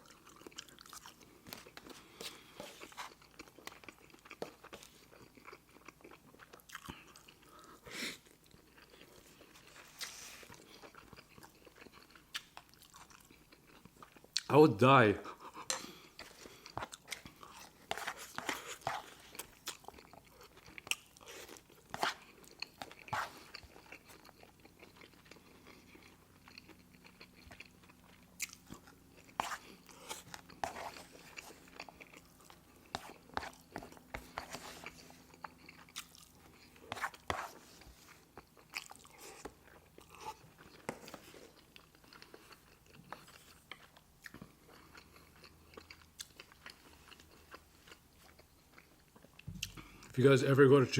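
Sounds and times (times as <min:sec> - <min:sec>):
person chewing and lip-smacking: 0:00.0 - 0:14.5, 0:15.2 - 0:50.2.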